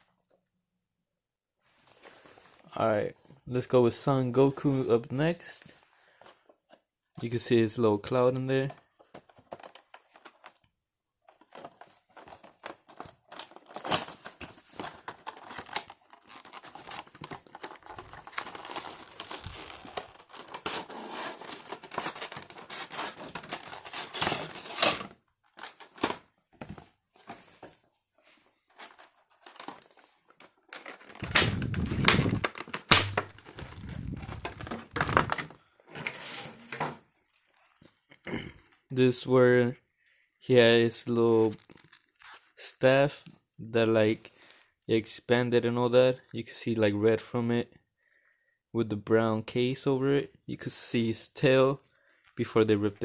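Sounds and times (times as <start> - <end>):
packaging tearing and crinkling: 11.6 - 26.2, 28.8 - 35.6.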